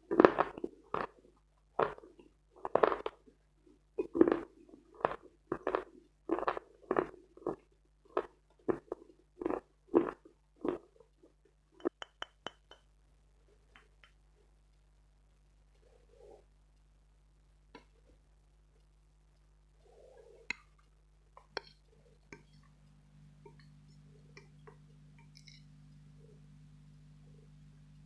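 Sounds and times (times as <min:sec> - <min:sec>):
crunchy chewing: 0:04.0 - 0:11.2, 0:23.5 - 0:25.6.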